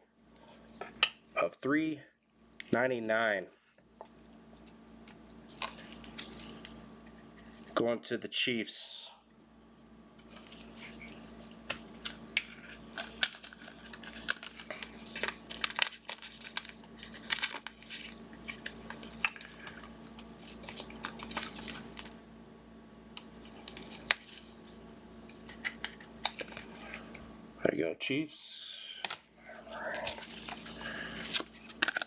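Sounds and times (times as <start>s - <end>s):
faint steady hum: 0.0s - 32.0s
plastic packaging crinkling: 5.4s - 7.8s, 10.2s - 22.2s, 23.2s - 27.2s, 29.0s - 32.0s.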